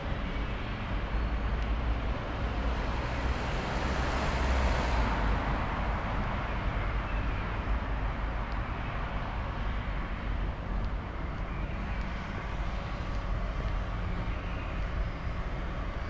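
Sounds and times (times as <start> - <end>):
steady low traffic rumble: 0.0 - 16.0
vehicle passing by: 2.4 - 5.8.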